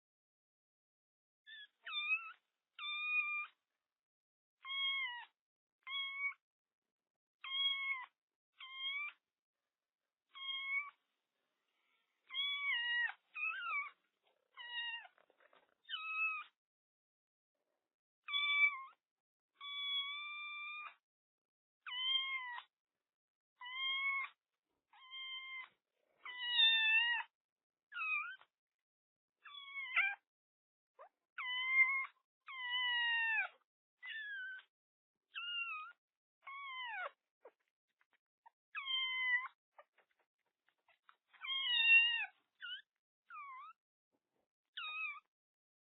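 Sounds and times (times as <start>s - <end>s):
kitten meowing: 4.6s - 5.3s, 5.9s - 6.4s, 7.4s - 9.2s, 10.3s - 11.0s, 12.3s - 15.2s, 15.8s - 16.6s, 18.3s - 19.0s, 21.9s - 22.7s, 23.6s - 24.4s, 25.0s - 27.3s, 28.0s - 28.5s, 29.5s - 30.2s, 31.0s - 34.7s, 35.4s - 37.2s, 38.8s - 39.6s, 41.3s - 43.8s, 44.7s - 45.3s.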